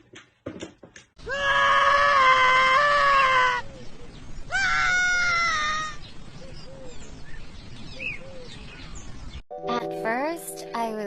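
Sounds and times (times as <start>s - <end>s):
animal screaming: 1.2s - 3.7s, 4.5s - 6.0s.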